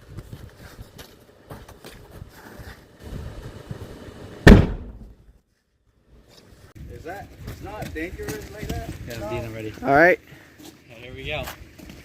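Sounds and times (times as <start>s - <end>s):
balloon bursting with a loud bang: 4.4s - 5.2s.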